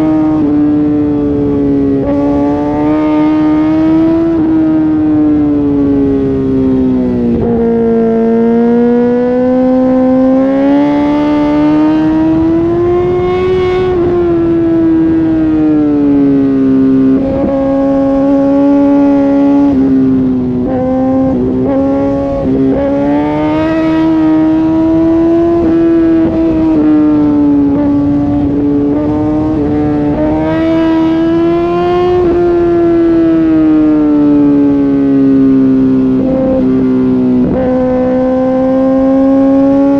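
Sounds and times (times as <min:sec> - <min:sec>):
motorcycle engine at high revs: 0:00.0 - 0:39.9.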